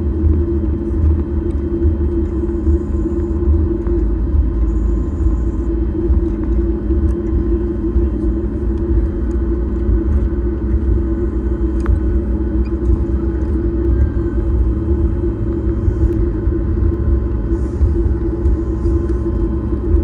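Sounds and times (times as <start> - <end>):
airplane cabin rumble: 0.0 - 20.0
jet engine hum: 0.0 - 20.0.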